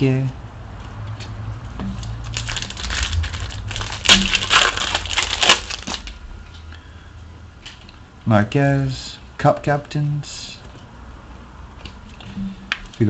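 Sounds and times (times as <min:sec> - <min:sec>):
foil wrapper crinkling and tearing: 0:02.0 - 0:06.2.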